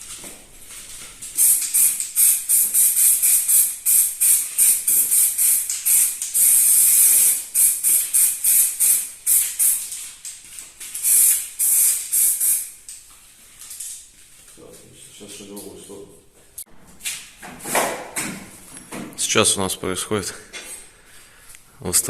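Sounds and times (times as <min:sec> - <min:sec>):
spray can hissing: 0:01.3 - 0:10.0, 0:10.8 - 0:12.8.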